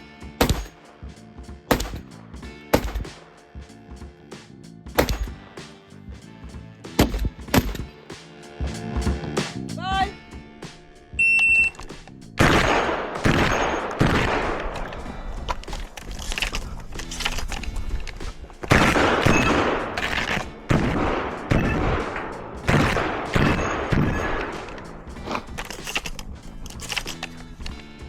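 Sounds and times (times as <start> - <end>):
background music: 0.0 - 28.0
shotgun shots: 0.4 - 0.8, 1.7 - 2.1, 2.7 - 3.3, 5.0 - 5.4, 7.0 - 7.9, 12.4 - 15.0, 18.7 - 24.8
shot timer beep: 11.2 - 11.8.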